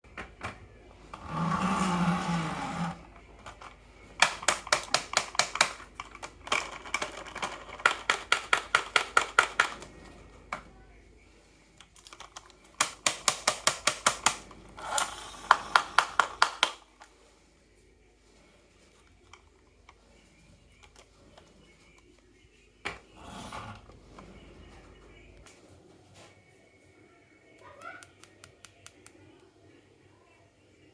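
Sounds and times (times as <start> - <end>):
marbles rolling rumble: 1.0 - 3.5.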